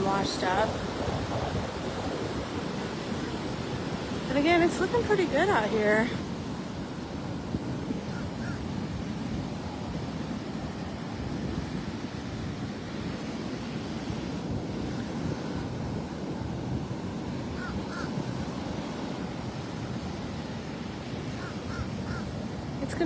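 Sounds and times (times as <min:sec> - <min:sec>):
surf breaking on beach: 0:00.0 - 0:23.0
wind buffeting microphone: 0:00.0 - 0:23.0
short bird calls: 0:21.4 - 0:22.2.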